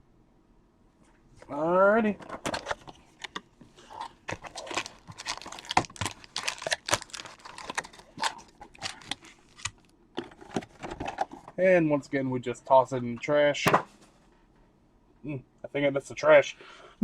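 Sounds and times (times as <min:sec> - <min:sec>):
packaging crinkling and tearing: 0:02.5 - 0:11.4.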